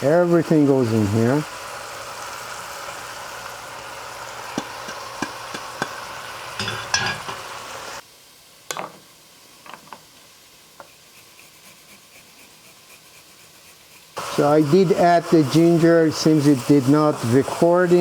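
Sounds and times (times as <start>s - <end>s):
chicken sizzling in oil: 0.0s - 8.3s, 13.9s - 18.0s
spoon clinking in pot: 6.6s - 7.6s.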